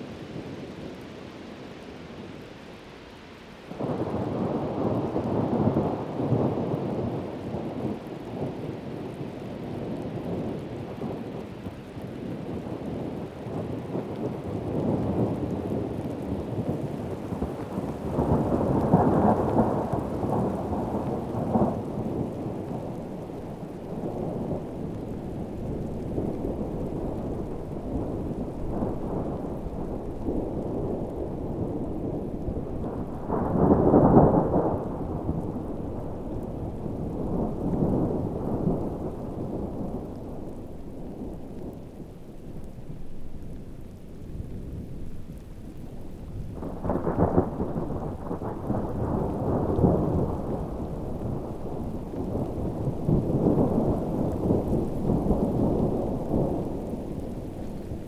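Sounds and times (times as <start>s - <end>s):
heavy rain: 0.0s - 58.0s
rumbling thunder: 12.2s - 58.0s.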